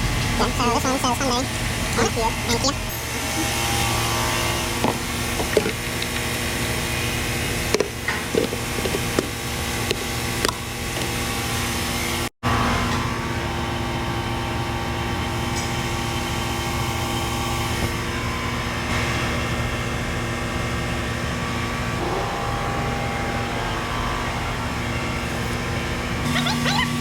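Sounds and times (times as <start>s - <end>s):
machine hum: 0.0s - 27.0s
constant rushing noise: 15.4s - 27.0s.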